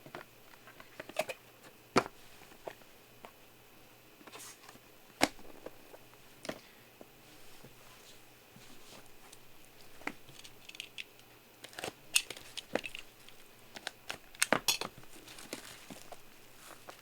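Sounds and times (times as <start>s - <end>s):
plastic wrapping crinkling: 8.8s - 17.0s.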